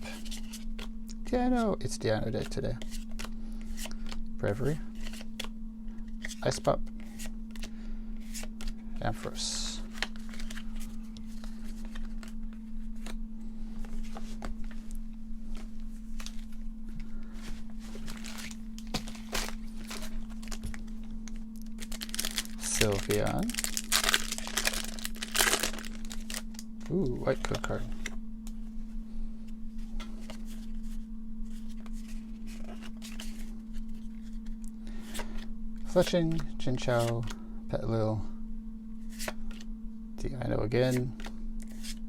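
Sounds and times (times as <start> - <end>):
steady hum: 0.0 - 42.0
cards clicking and rustling: 2.4 - 13.2, 15.5 - 28.2.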